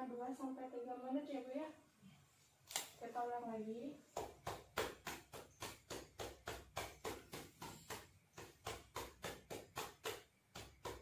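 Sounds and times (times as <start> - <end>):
hands patting on a back: 4.1 - 11.0.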